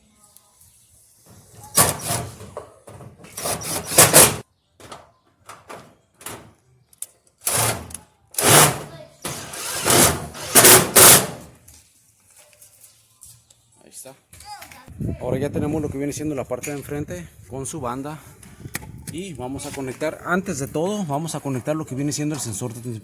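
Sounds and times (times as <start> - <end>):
sheet metal clattering and scraping: 1.7 - 6.5, 7.5 - 11.5.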